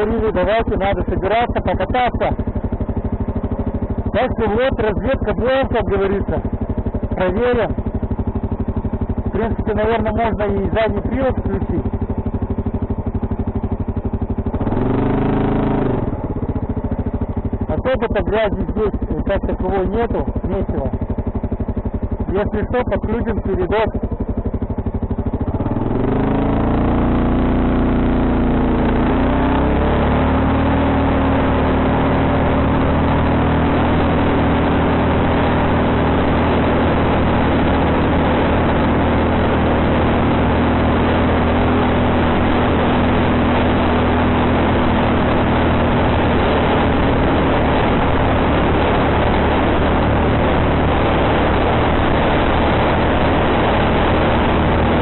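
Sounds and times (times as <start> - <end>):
quad bike engine: 0.0 - 55.0.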